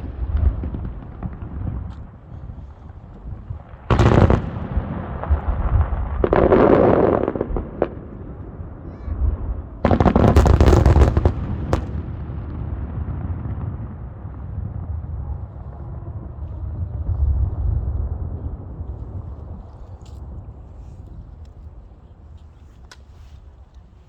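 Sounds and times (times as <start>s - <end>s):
fireworks crackling: 0.0s - 8.8s, 9.6s - 21.6s
fireworks bursting: 0.0s - 15.3s
low rumble: 11.3s - 22.3s.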